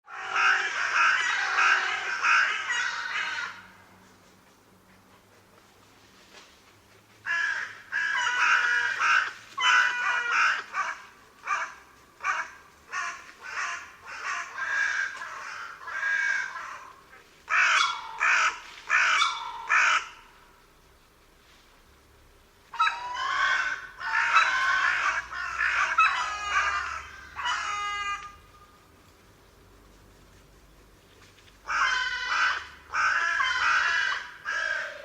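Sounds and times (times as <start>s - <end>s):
crow cawing: 7.3s - 11.7s, 31.7s - 35.0s.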